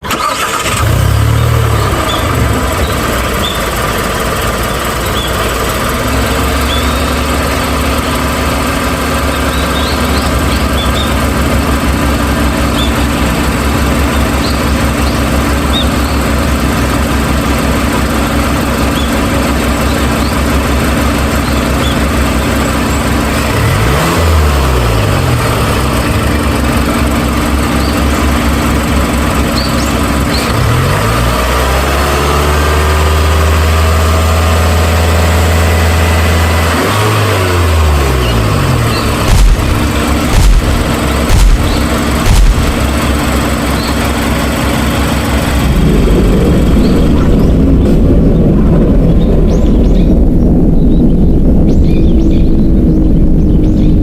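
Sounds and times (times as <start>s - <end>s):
low engine-like rumble: 0.2s - 30.9s, 37.7s - 54.0s
steady hum: 38.6s - 51.6s.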